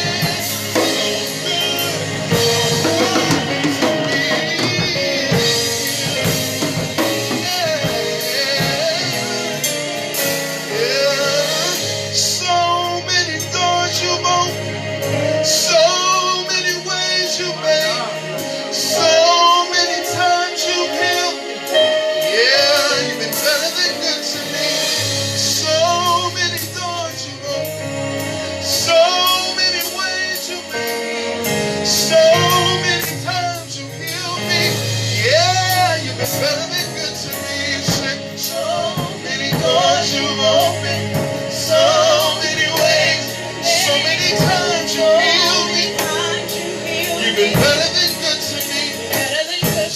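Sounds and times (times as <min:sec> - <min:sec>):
sustained chords and bass: 0:00.0 - 0:19.7, 0:20.8 - 0:49.9
woman singing gospel lead: 0:34.2 - 0:49.9.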